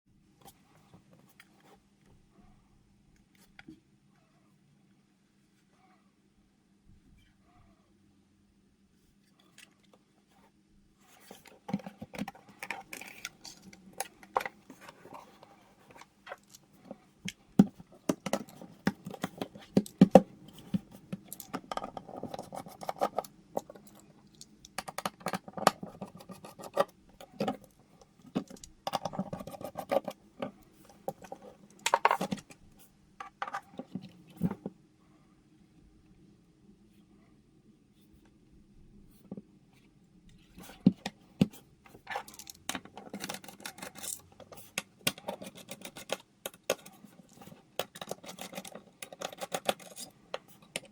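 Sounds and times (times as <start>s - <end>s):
faint steady hum: 0.1s - 50.9s
hands clicking and scraping plastic parts: 9.2s - 34.8s, 39.1s - 50.9s.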